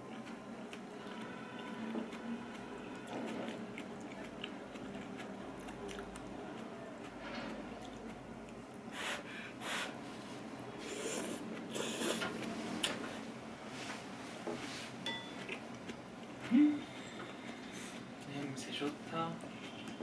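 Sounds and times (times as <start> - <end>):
chewing and mouth clicks: 0.1 - 8.7, 19.5 - 20.0
noodle slurping: 10.8 - 12.3
person humming: 16.5 - 16.9.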